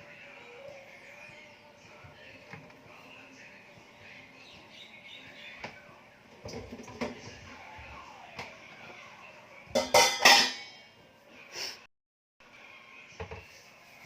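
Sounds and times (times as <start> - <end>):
dishes knocking and clinking: 6.4 - 7.4, 9.7 - 10.8
pots and pans clattering: 6.4 - 7.4, 9.7 - 10.8.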